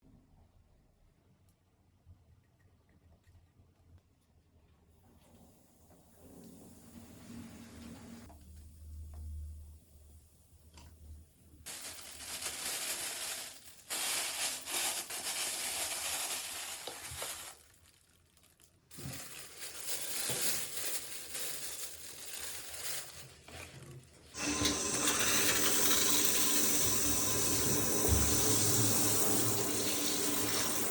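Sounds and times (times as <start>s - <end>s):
shower head spraying water: 24.4s - 30.9s
water noise: 24.4s - 30.9s.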